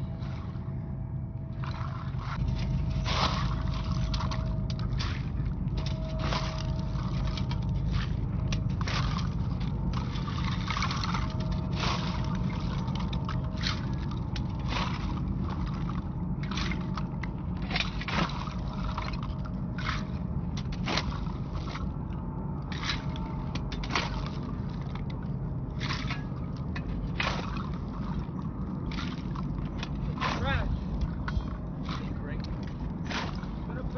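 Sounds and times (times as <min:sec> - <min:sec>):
steady low rumble: 0:00.0 - 0:33.9
shovel and broom scraping ground: 0:30.1 - 0:30.7.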